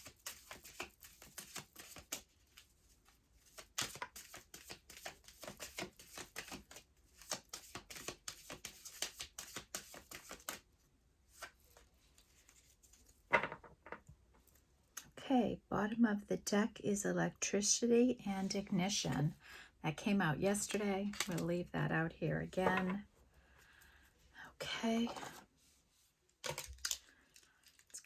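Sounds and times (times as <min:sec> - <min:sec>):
cards being shuffled: 0:00.0 - 0:10.6, 0:20.7 - 0:21.5, 0:26.4 - 0:28.0.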